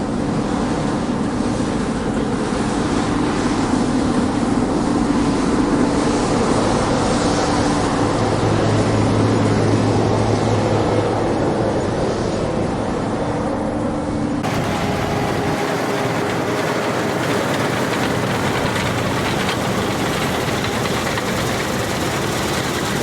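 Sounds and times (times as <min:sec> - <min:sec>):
combine harvester running: 0:14.4 - 0:23.0
deeper hum: 0:14.4 - 0:23.0.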